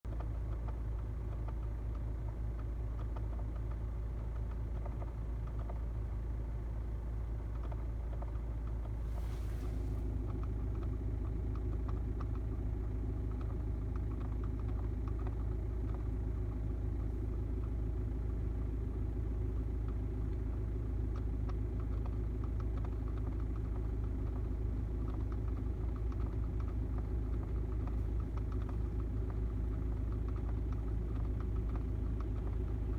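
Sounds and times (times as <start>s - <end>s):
diesel engine idling: 8.8s - 32.9s
rapid faint ticking: 19.5s - 32.9s.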